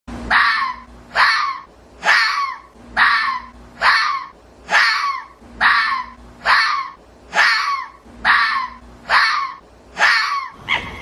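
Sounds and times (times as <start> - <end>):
fox giving harsh raspy calls: 0.3 - 11.0.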